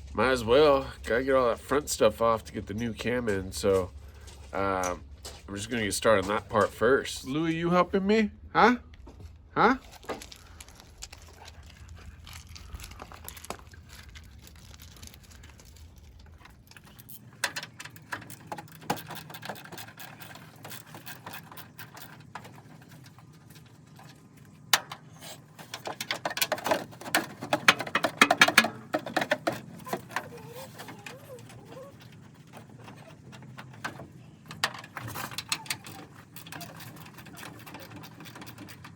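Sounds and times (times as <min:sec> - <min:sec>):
metal tools clicking and rattling: 0:13.0 - 0:38.9.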